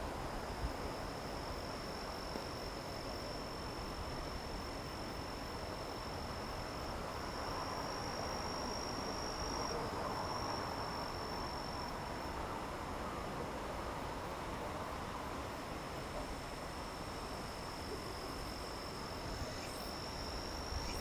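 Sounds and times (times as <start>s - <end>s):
cricket trilling: 16.9s - 21.0s.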